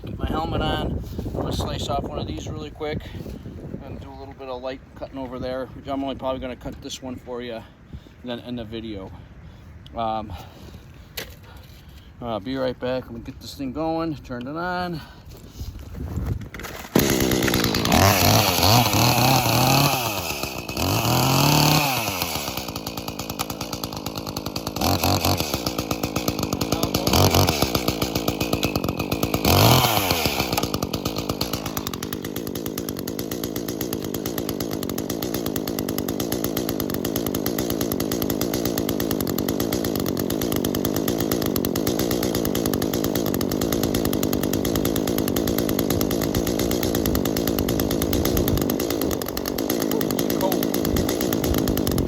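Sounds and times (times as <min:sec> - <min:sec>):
chainsaw revving and cutting: 0:16.6 - 0:52.0.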